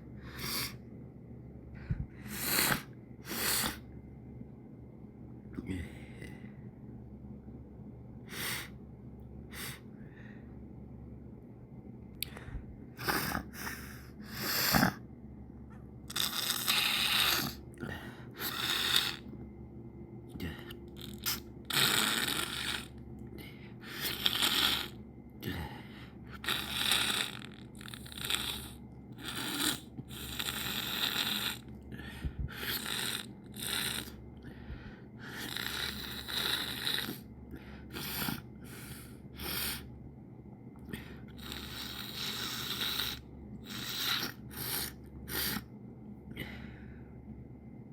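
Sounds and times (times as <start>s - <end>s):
person sniffling: 13.0s - 15.0s, 28.3s - 39.9s, 41.0s - 45.7s.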